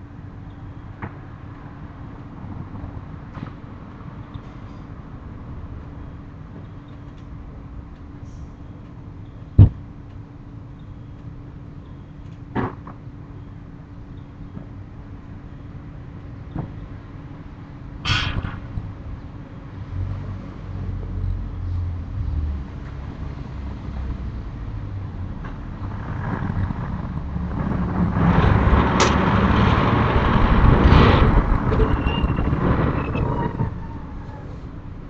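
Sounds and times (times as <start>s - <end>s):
low steady traffic rumble: 0.0s - 35.0s
sharp knock: 18.0s - 18.9s
vehicle passing: 21.8s - 33.8s.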